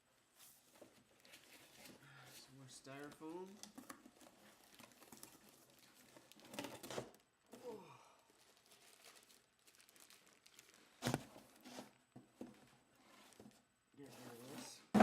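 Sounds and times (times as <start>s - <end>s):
packing crinkling and rustling: 0.8s - 2.0s, 2.9s - 7.6s, 8.3s - 13.6s.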